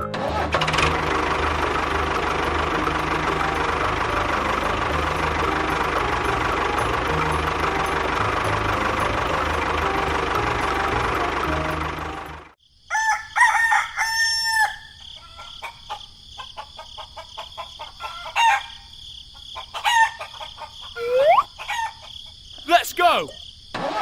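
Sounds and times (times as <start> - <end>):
loud mechanical noise: 0.1 - 12.6
rooster crowing: 12.9 - 16.0, 18.0 - 18.9, 19.6 - 22.1
chickens clucking: 19.3 - 22.4.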